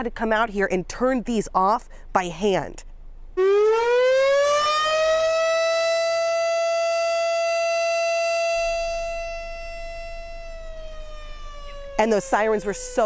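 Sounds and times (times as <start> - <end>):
warning siren wailing: 3.4 - 13.0.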